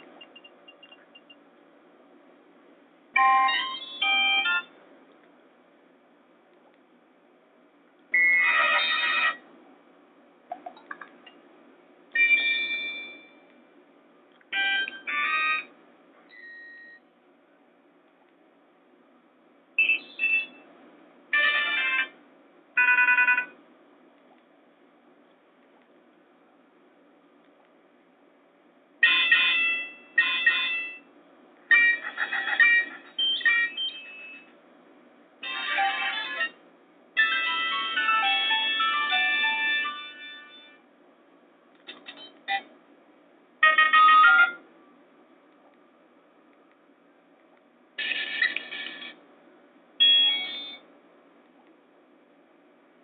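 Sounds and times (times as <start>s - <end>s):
phone ringtone: 3.2s - 4.7s, 8.2s - 9.4s, 12.2s - 13.4s, 14.6s - 15.7s, 21.4s - 22.2s, 22.8s - 23.6s, 29.0s - 31.1s, 31.7s - 34.5s, 35.4s - 36.6s, 37.2s - 40.8s, 43.6s - 44.6s, 50.0s - 50.8s
polyphonic phone ringtones: 12.2s - 13.3s, 14.6s - 15.7s, 22.8s - 23.6s, 29.0s - 31.0s.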